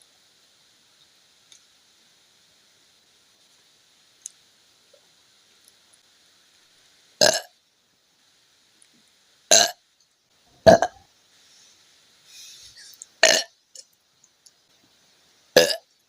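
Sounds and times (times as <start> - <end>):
woman burping: 10.7 - 11.0, 13.2 - 13.5, 15.6 - 15.8.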